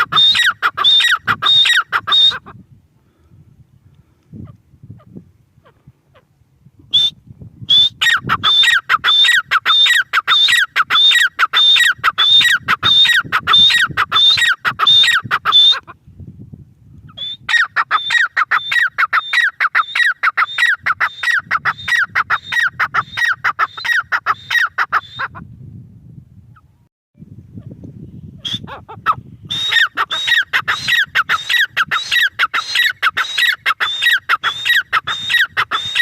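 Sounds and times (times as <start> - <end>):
francolin calling: 0.0 - 2.5, 7.7 - 16.0, 17.1 - 25.4, 28.5 - 36.0.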